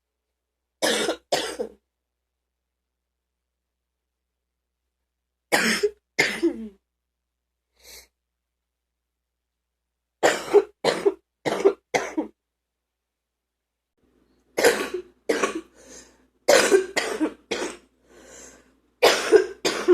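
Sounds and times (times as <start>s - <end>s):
woman coughing: 0.8s - 1.8s, 5.5s - 6.8s, 10.2s - 12.4s, 14.6s - 15.7s, 16.5s - 17.8s, 19.0s - 19.9s.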